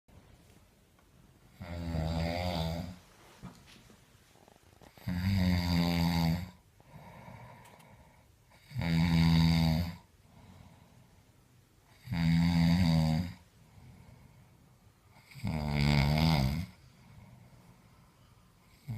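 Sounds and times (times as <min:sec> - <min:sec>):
loud buzzing snores: 0:01.6 - 0:03.0, 0:05.0 - 0:07.5, 0:08.6 - 0:10.1, 0:12.0 - 0:13.4, 0:15.2 - 0:16.8, 0:18.7 - 0:18.9
faint breath: 0:06.8 - 0:08.4, 0:10.2 - 0:11.4, 0:13.6 - 0:15.1, 0:16.8 - 0:18.7.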